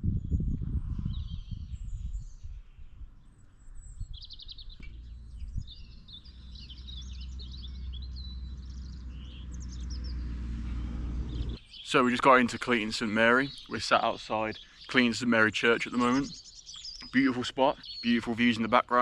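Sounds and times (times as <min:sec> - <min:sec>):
songbirds chirping and trilling: 0:00.0 - 0:19.0
steady low rumble: 0:04.8 - 0:11.6.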